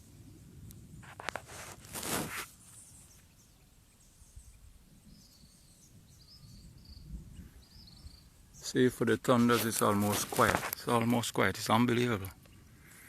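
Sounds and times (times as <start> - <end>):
brief rustling: 1.0 - 2.8, 9.3 - 11.1
faint insect chirping: 2.4 - 9.9.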